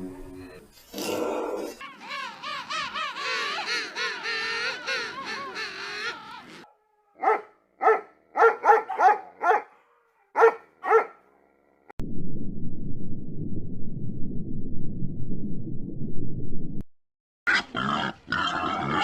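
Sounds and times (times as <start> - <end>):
dog barking: 7.2 - 11.3
low rumbling noise: 12.0 - 16.9.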